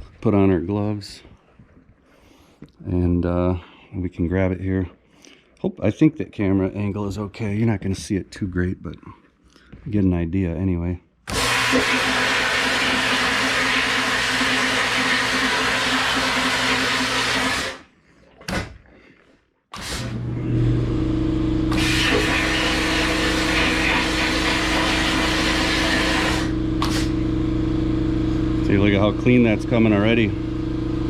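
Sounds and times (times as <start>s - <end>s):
blast nozzle hissing: 11.3s - 17.8s, 21.7s - 27.2s
machine pump humming: 11.3s - 17.9s, 19.8s - 31.0s.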